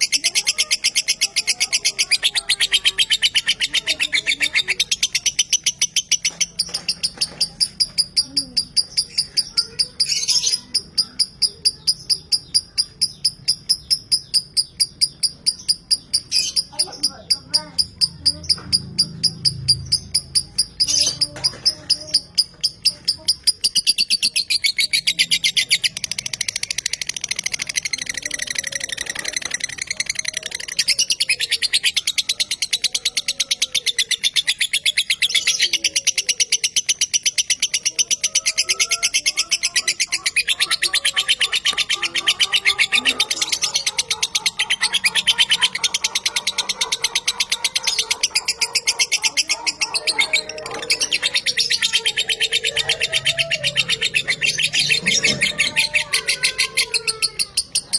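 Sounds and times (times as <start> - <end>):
lovebird chattering trill: 0.0 - 57.9.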